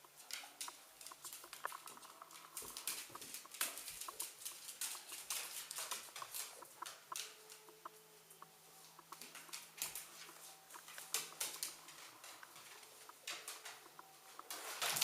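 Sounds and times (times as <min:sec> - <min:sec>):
dog claws clicking and scraping: 0:00.3 - 0:07.9.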